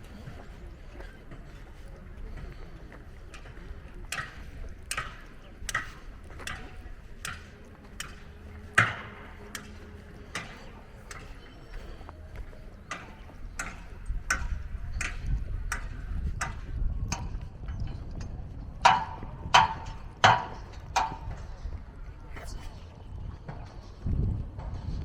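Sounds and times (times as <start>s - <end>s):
footsteps on hard surface: 0.0s - 15.4s.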